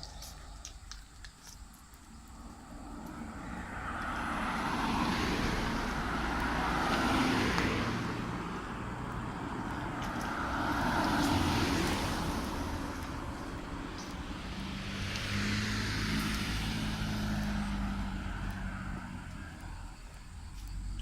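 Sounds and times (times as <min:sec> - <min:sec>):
car tyres hissing on wet street: 0:02.5 - 0:08.8, 0:09.6 - 0:19.4.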